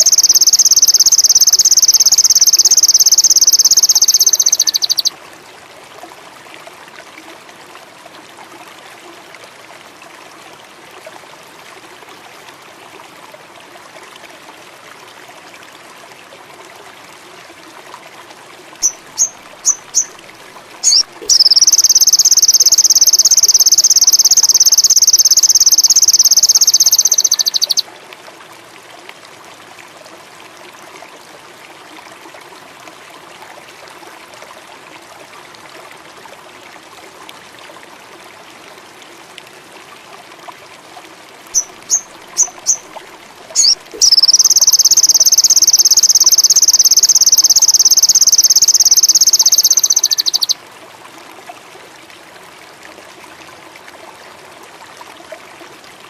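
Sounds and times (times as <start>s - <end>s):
bird chirps and trill: 0.0s - 5.1s, 18.8s - 20.1s, 20.8s - 27.8s, 41.6s - 42.8s, 43.6s - 50.6s.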